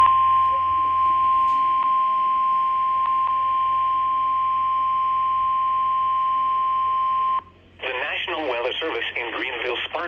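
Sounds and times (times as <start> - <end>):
steady high alarm beep: 0.0 - 7.4
faint radio hiss: 7.7 - 10.0.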